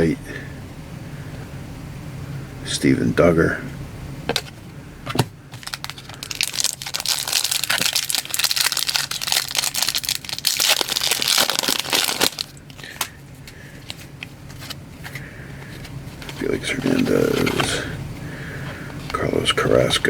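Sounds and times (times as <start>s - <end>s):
plastic foil wrapper crinkling: 5.5s - 17.9s.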